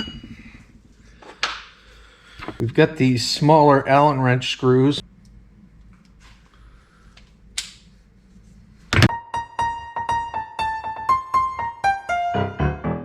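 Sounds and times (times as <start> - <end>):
piano melody: 9.1 - 13.0.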